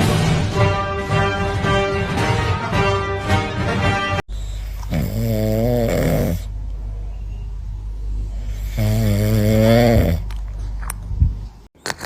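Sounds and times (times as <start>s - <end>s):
steady low hum: 4.3s - 11.7s
cat snoring: 4.8s - 6.5s, 8.4s - 10.2s.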